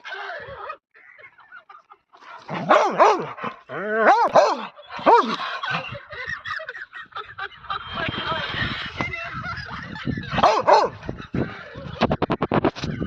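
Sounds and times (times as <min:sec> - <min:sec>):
dog barking: 0:02.5 - 0:05.8, 0:10.3 - 0:11.0.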